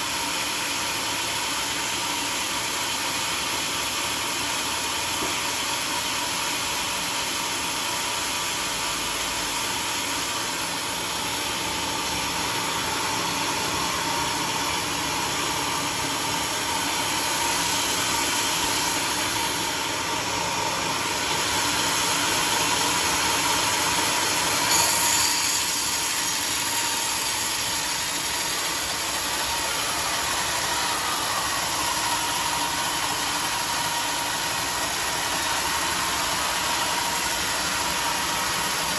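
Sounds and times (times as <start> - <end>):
engine-driven sawmill running: 0.0 - 38.9
sharp high saw burst: 21.1 - 36.4.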